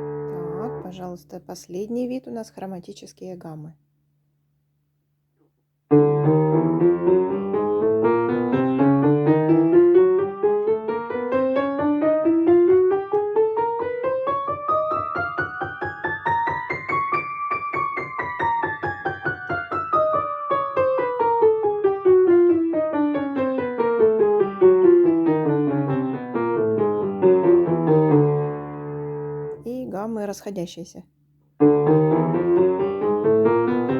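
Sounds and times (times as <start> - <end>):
piano chromatic scale: 0.0 - 1.0, 5.9 - 29.7, 31.6 - 33.9.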